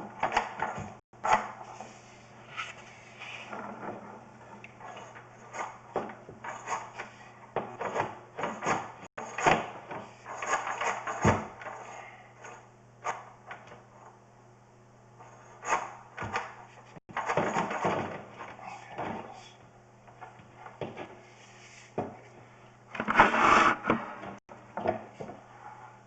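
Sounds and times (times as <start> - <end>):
low electrical hum: 0.0 - 26.0
inspection camera scraping in pipe: 23.0 - 24.4.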